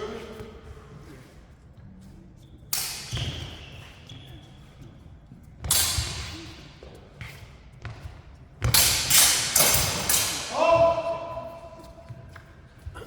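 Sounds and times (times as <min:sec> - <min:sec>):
swords clashing: 0:02.8 - 0:03.5, 0:05.7 - 0:06.7, 0:08.7 - 0:11.3.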